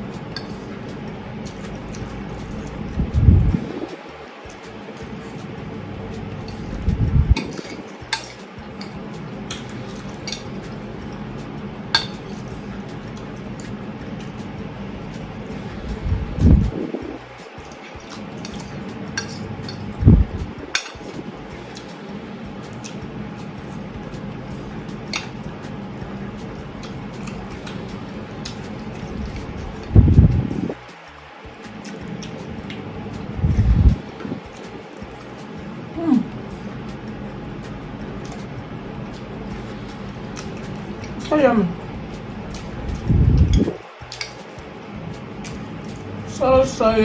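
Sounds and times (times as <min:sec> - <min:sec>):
cutlery clinking against a dish: 0:07.4 - 0:10.8, 0:12.0 - 0:14.4.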